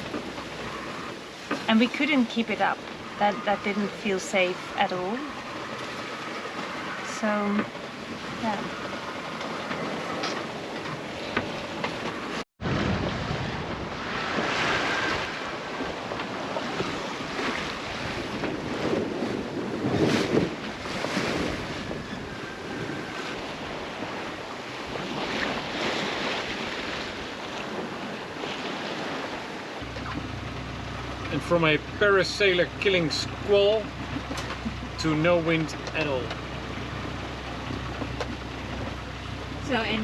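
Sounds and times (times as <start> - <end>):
sea waves washing: 0.0 - 40.0
wind buffeting microphone: 0.0 - 40.0.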